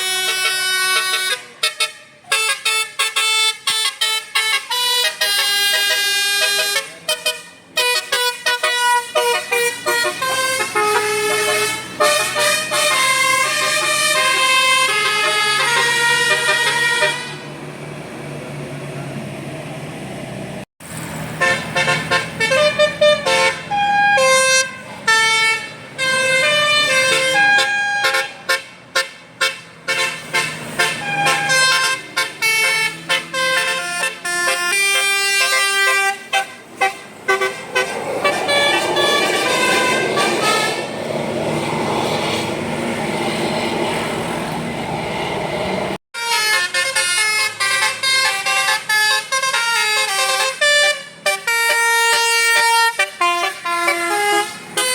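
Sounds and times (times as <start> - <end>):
bus musical horn tunes: 0.0 - 17.5, 21.3 - 41.0, 46.2 - 54.9
even rushing noise: 36.6 - 46.0.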